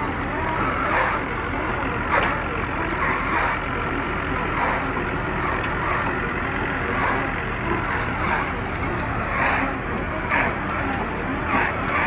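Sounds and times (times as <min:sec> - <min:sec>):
tractor engine running: 0:00.0 - 0:12.0
baler swishing clatter: 0:02.0 - 0:03.7, 0:06.8 - 0:10.6.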